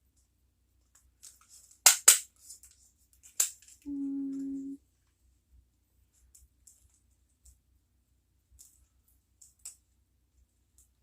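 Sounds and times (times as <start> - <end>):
hummed note: 3.9 - 4.8.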